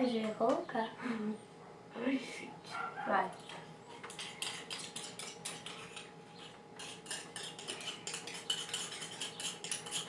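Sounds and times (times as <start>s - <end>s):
spoon scraping a bowl: 3.9s - 10.0s.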